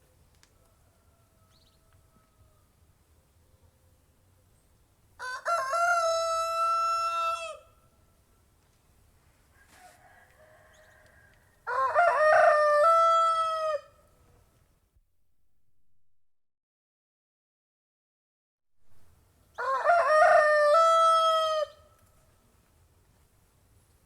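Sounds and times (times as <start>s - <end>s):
rooster crowing: 0.6s - 2.7s, 5.2s - 7.8s, 9.5s - 14.0s, 19.6s - 21.9s.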